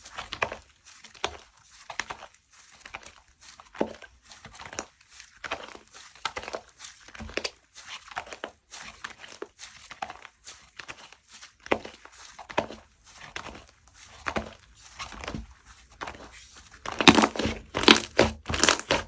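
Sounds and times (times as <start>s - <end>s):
slime squishing with sticky clicks: 16.8s - 19.0s.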